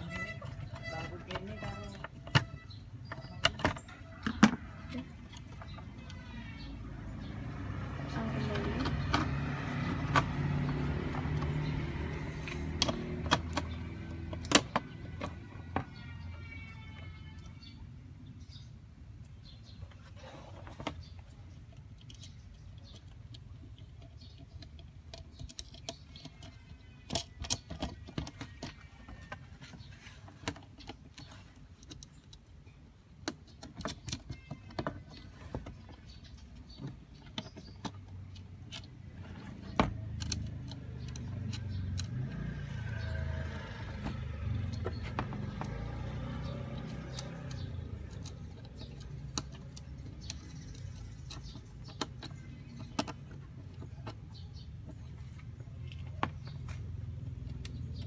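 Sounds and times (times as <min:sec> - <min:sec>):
small clicks and clinks: 0:20.6 - 0:58.0.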